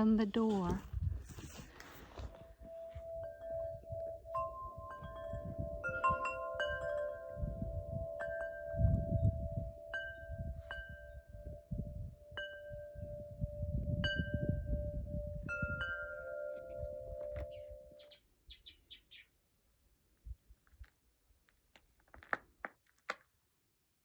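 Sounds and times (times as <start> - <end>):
wind chimes ringing: 2.6 - 18.0.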